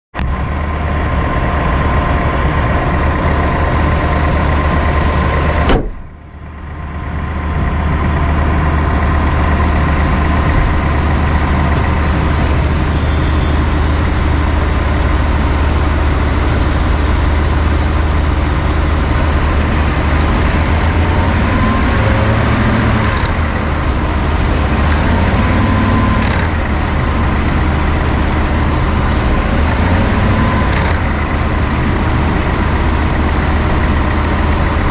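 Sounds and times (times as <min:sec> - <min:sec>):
engine running with low hum: 0:00.2 - 0:34.9
sharp engine clicks: 0:22.5 - 0:24.0, 0:26.1 - 0:26.8, 0:30.2 - 0:31.4.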